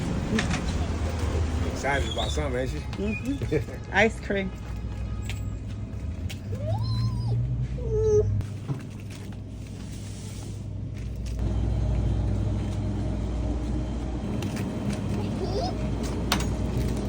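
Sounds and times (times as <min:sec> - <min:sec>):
steady low hum: 0:09.0 - 0:17.0.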